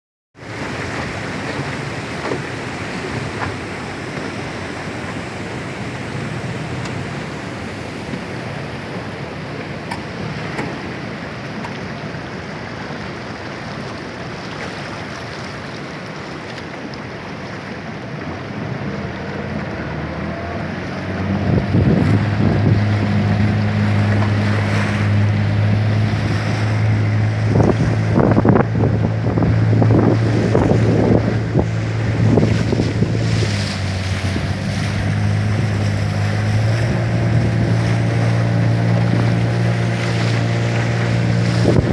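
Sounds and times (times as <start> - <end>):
waterfall roaring: 0.4 - 41.9
wind buffeting microphone: 18.2 - 41.9
engine humming: 18.3 - 41.9.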